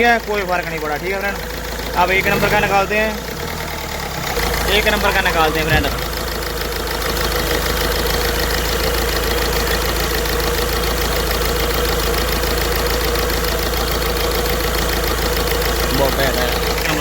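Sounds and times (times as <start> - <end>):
car engine idling with ticking: 0.0 - 17.0.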